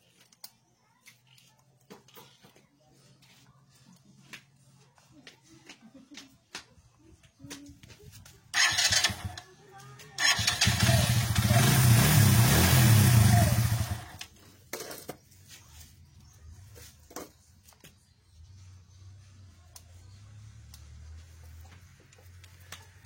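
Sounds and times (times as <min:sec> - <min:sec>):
motorcycle starter cranking engine: 0:08.5 - 0:09.5, 0:10.2 - 0:14.3.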